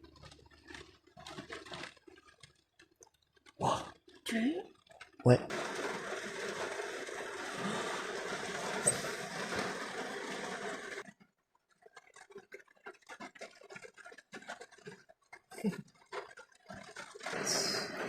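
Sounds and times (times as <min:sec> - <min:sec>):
rain and wind rushing: 0:05.5 - 0:11.0, 0:16.1 - 0:18.0.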